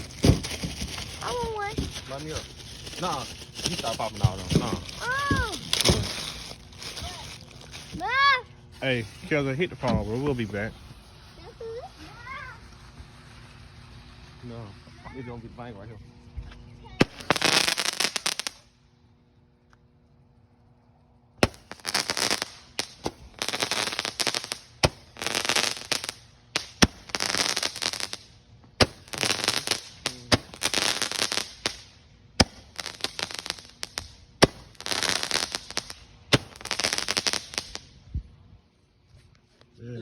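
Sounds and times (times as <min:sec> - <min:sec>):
firecrackers crackling: 0:00.0 - 0:15.7, 0:16.9 - 0:18.8, 0:21.4 - 0:38.1
sharp firecracker pops: 0:00.2 - 0:00.8, 0:03.6 - 0:06.2, 0:17.0 - 0:18.6, 0:21.4 - 0:28.2, 0:28.8 - 0:31.8, 0:32.4 - 0:37.8.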